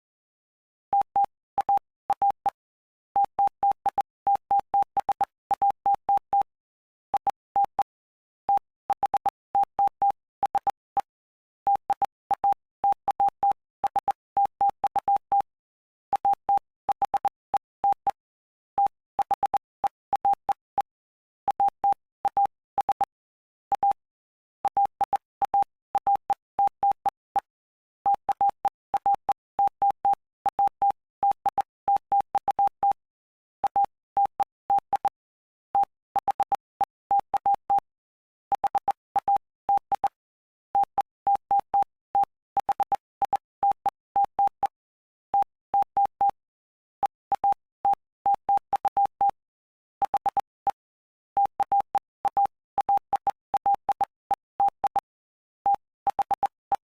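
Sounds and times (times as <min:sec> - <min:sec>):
morse code beeps: 0:01.0 - 0:02.6, 0:03.2 - 0:06.5, 0:16.1 - 0:18.2, 0:18.8 - 0:24.0, 0:24.6 - 0:27.5, 0:28.1 - 0:33.0, 0:33.6 - 0:35.2, 0:35.8 - 0:37.9, 0:38.5 - 0:40.2, 0:40.8 - 0:44.8, 0:45.4 - 0:46.4, 0:47.0 - 0:49.4, 0:50.0 - 0:50.8, 0:51.4 - 0:55.1, 0:55.7 - 0:56.9.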